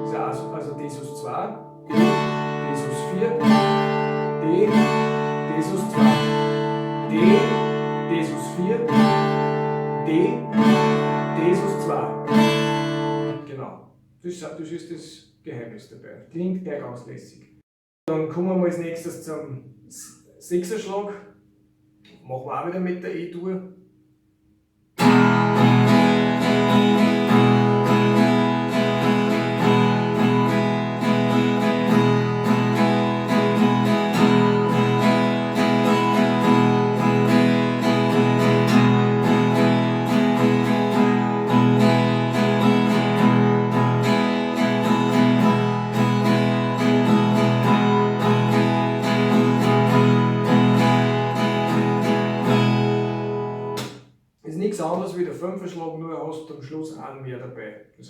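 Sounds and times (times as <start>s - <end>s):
acoustic guitar strumming: 0.0s - 13.6s, 25.0s - 54.0s.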